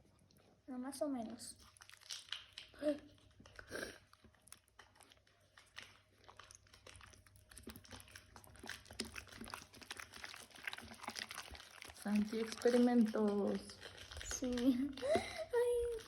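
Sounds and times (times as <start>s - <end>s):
slime stirred with sticky squelches: 0.0s - 16.0s.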